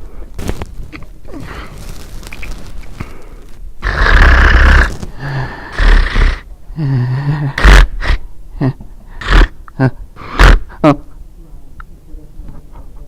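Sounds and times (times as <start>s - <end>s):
man fake snoring: 3.8s - 10.8s.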